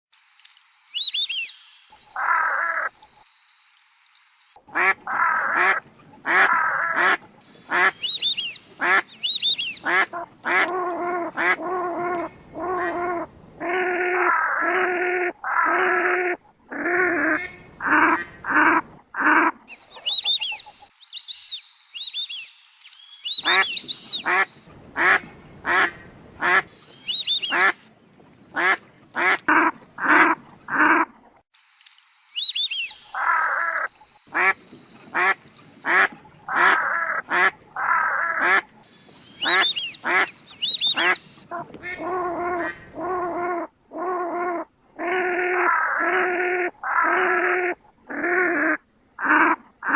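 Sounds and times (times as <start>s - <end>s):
high wavering whistled calls: 0.8s - 2.2s, 7.5s - 9.9s, 19.7s - 24.6s, 26.7s - 27.8s, 32.3s - 35.1s, 38.9s - 41.4s
ducks quacking: 4.7s - 20.9s, 23.3s - 27.8s, 28.5s - 31.2s, 33.1s - 38.8s, 39.4s - 43.6s.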